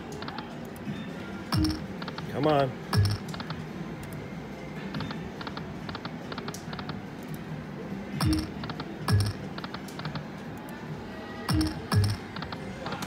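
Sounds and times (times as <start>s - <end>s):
quick electronic ticks: 1.5s - 2.2s, 11.5s - 12.3s.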